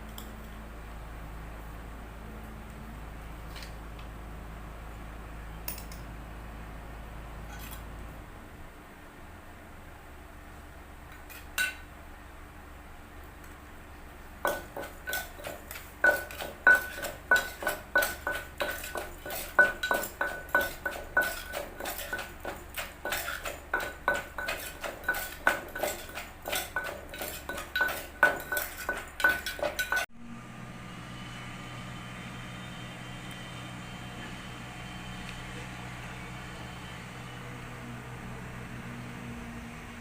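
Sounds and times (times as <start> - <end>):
steady low hum: 11.9 - 40.0
utensil clinking on a dish: 14.4 - 30.1.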